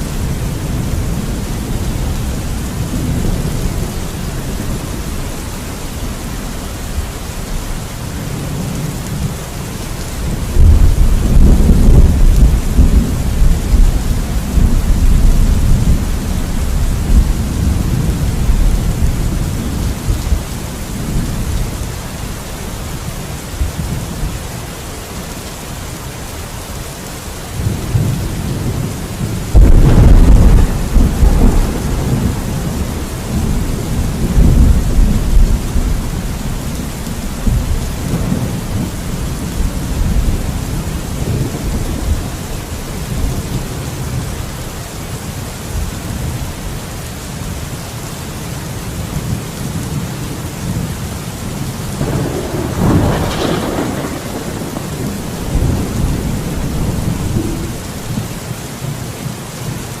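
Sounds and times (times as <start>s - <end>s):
steady rain: 0.0s - 60.0s
thunder rumbling: 8.2s - 21.8s, 27.6s - 44.3s, 49.2s - 58.4s
thunder clap: 28.0s - 36.2s, 52.0s - 58.2s.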